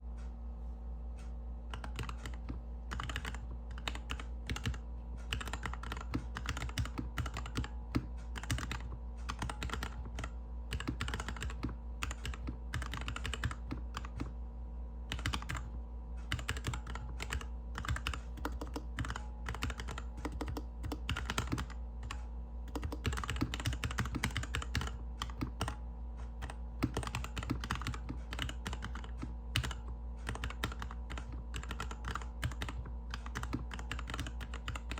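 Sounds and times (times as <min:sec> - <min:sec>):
mechanical keyboard keystroke clacks: 0:01.8 - 0:14.3, 0:16.3 - 0:25.8, 0:26.4 - 0:34.9.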